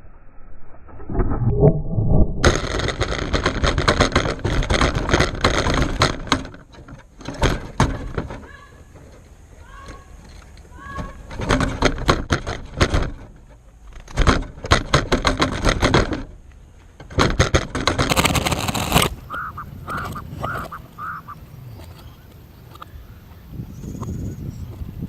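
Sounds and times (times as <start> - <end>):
bird calling harshly: 18.2 - 24.6
bird chirps: 19.2 - 24.9.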